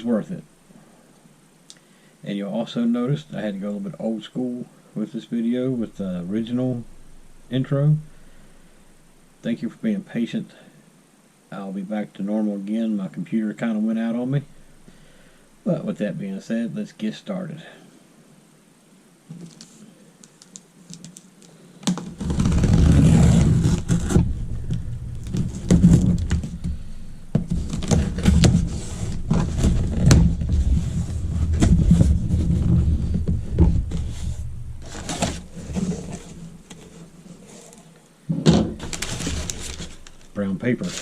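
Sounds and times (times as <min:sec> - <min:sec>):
cardboard box being handled: 0:21.9 - 0:37.8, 0:38.6 - 0:41.0.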